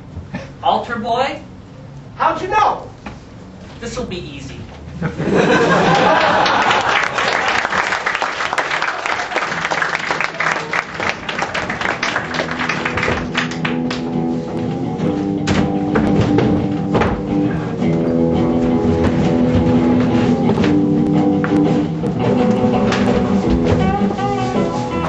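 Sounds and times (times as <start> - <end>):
audience applause: 5.8 - 14.1
guitar-led music with beat: 12.5 - 25.0.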